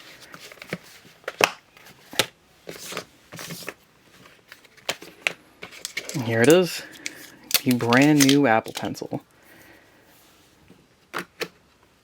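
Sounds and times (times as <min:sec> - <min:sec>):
cardboard packaging rustling: 0:00.0 - 0:09.2.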